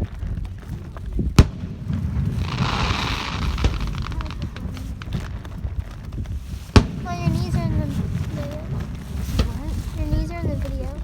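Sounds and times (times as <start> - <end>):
low background rumble: 0.0 - 11.0
firework hiss: 1.1 - 11.0
firework bang: 1.2 - 9.7.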